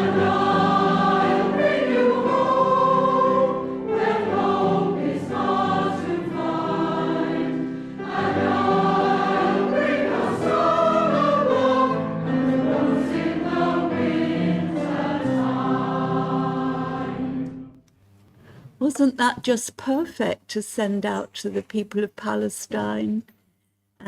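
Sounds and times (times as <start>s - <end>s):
choir singing slow song: 0.0s - 17.8s.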